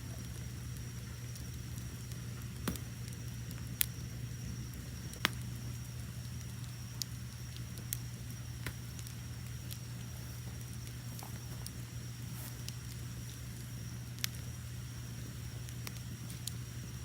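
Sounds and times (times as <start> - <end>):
fire crackling and popping: 0.0 - 17.0
wood fire roaring: 0.0 - 17.0
crickets chirping: 3.8 - 17.0.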